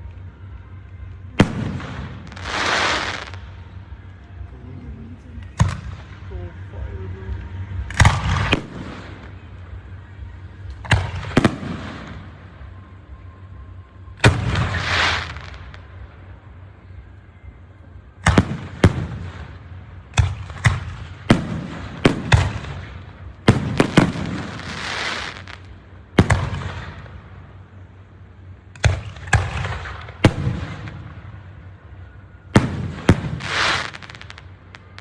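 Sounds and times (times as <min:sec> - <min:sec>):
crackling firework shells: 0:00.0 - 0:04.5, 0:18.2 - 0:27.4, 0:28.7 - 0:35.0
fireworks bangs with echo: 0:01.3 - 0:03.7, 0:07.8 - 0:09.5, 0:10.6 - 0:12.7, 0:18.2 - 0:27.3, 0:28.8 - 0:31.5, 0:32.5 - 0:35.0.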